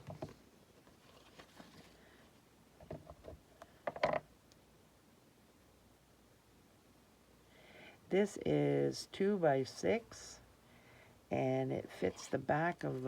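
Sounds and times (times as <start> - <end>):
paper and card handling rustles: 0.0 - 2.0.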